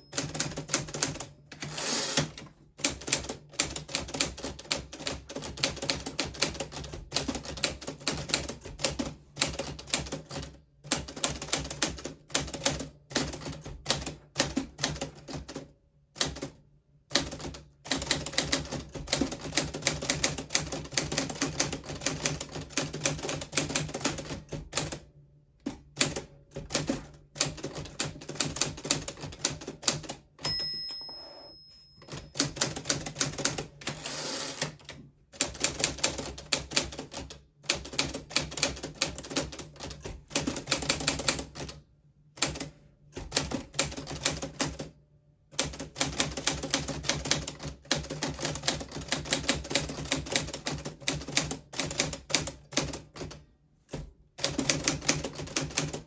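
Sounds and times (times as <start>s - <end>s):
typewriter margin bell ringing: 0.0s - 0.8s, 1.5s - 2.3s, 30.4s - 32.7s.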